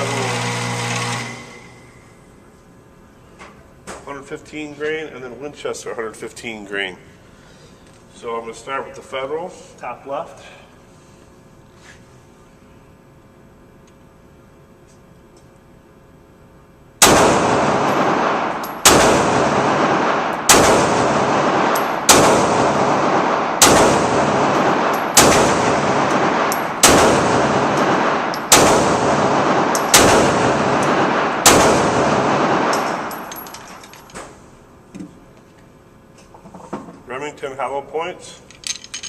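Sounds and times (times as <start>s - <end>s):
pistol shots echoing: 17.0s - 33.5s.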